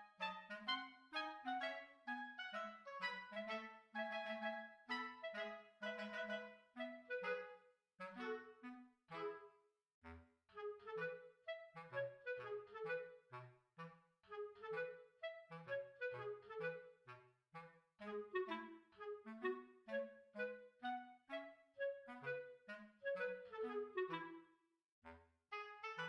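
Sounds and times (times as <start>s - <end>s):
bouncy staccato woodwind melody: 0.0s - 9.5s, 10.6s - 24.4s, 25.5s - 26.0s.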